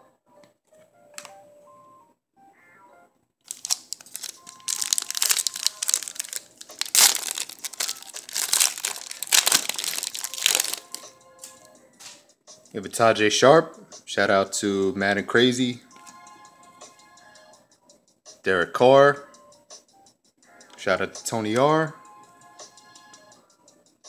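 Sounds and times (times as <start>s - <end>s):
plastic wrapper crinkling: 3.5s - 11.0s.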